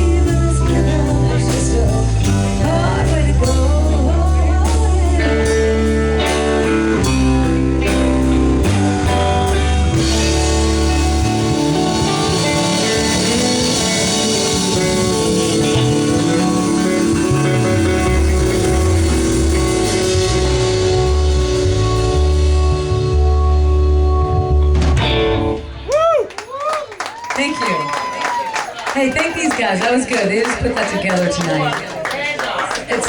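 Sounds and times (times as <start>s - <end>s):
electric guitar: 0.0s - 26.4s
bass guitar: 0.0s - 26.8s
drums: 0.0s - 33.0s.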